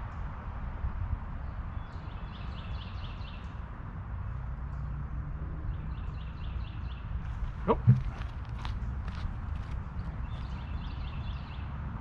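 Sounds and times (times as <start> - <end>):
songbird chirping: 5.6 - 11.8.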